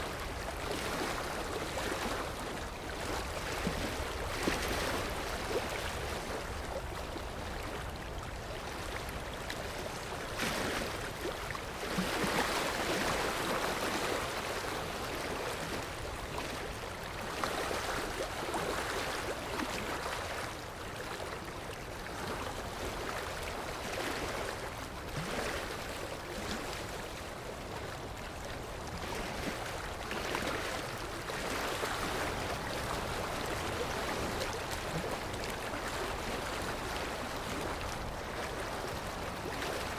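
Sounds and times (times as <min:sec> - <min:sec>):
ocean waves washing ashore: 0:00.0 - 0:39.9.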